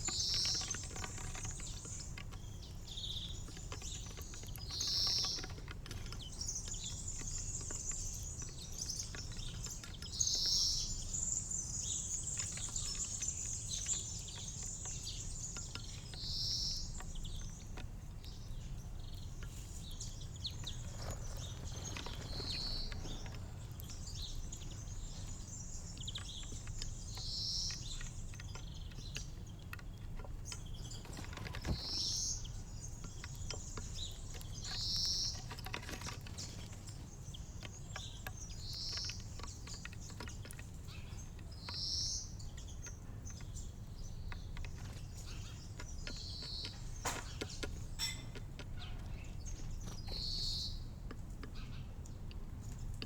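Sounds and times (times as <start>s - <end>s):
light ticks and taps: 0.0s - 53.0s
songbirds chirping and twittering: 0.0s - 53.0s.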